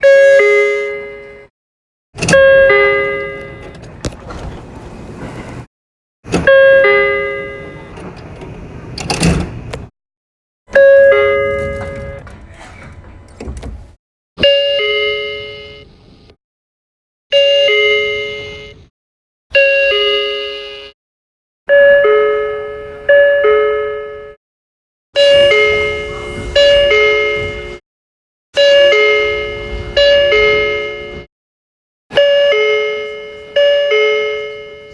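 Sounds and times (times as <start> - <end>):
train door chime ding-dong: 0.0 - 1.5, 2.2 - 4.4, 6.3 - 8.5, 10.7 - 13.0, 14.4 - 15.8, 17.3 - 18.8, 19.6 - 21.0, 21.7 - 24.4, 25.2 - 27.8, 28.6 - 31.3, 32.1 - 34.9
two-note door chime: 2.2 - 3.8, 6.4 - 8.0, 10.8 - 12.4, 32.2 - 34.9
train rumble: 2.2 - 5.7, 6.3 - 9.9, 11.3 - 14.0, 25.2 - 27.8.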